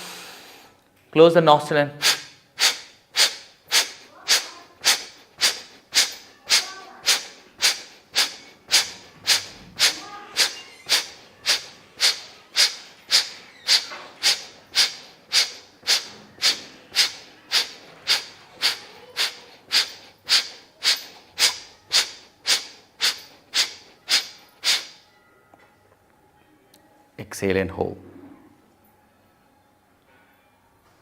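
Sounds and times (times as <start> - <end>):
forceful nasal exhalations: 2.0 - 25.0.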